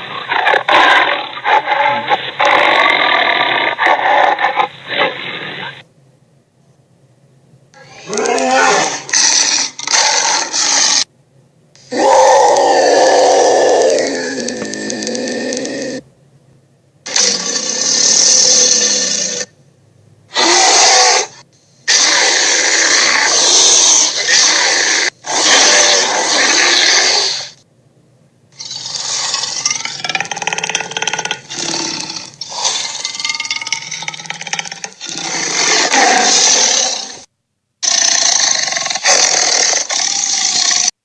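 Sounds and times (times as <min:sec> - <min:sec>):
dinosaur roars: 0:07.8 - 0:11.1, 0:11.9 - 0:16.0, 0:17.1 - 0:19.5, 0:20.3 - 0:27.5, 0:28.6 - 0:40.9.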